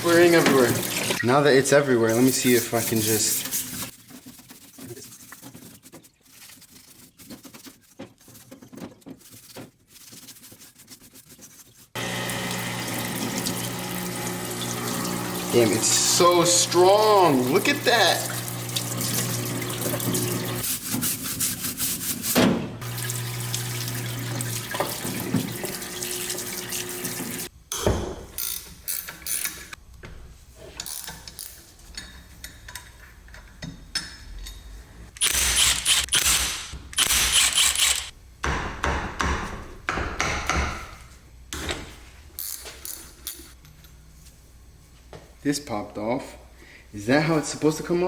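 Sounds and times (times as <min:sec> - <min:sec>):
electric motor hum: 0:12.0 - 0:20.6, 0:22.8 - 0:27.5
pump spraying cleaner: 0:12.0 - 0:20.7, 0:22.8 - 0:27.5.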